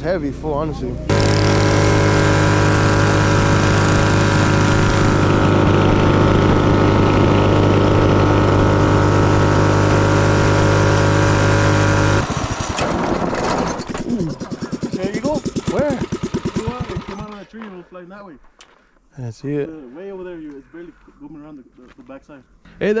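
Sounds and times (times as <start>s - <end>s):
mini bike engine running: 1.1s - 17.5s.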